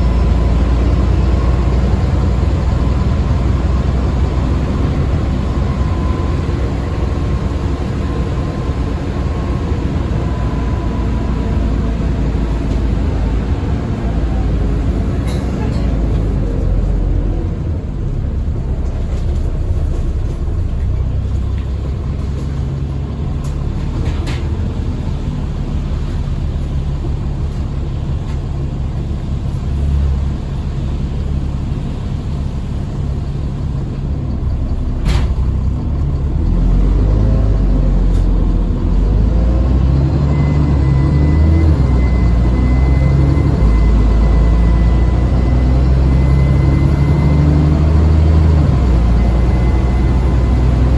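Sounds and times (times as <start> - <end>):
bus engine rumbling: 0.0 - 50.9
high turbo whine: 30.0 - 50.9.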